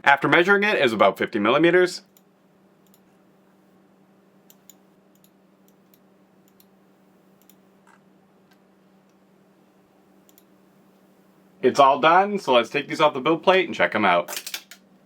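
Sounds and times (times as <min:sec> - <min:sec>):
faint low hum: 0:00.0 - 0:15.0
faint irregular clicks: 0:02.1 - 0:03.2, 0:04.4 - 0:06.8, 0:07.4 - 0:09.2, 0:10.2 - 0:11.1.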